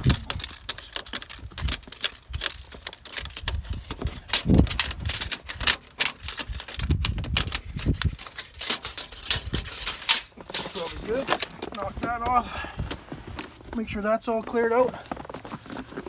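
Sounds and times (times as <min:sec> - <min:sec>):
tape measure scraping in pipe: 0:00.0 - 0:11.6.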